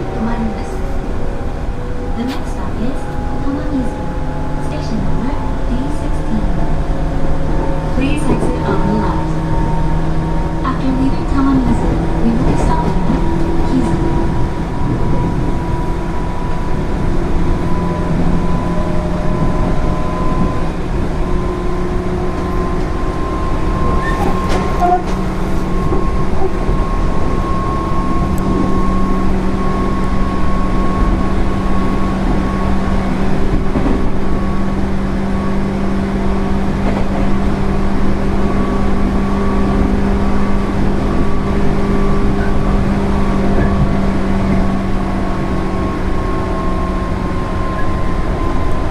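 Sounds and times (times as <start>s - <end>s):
train motors humming: 0.0s - 48.9s
wheels rumbling on rail: 0.0s - 48.9s.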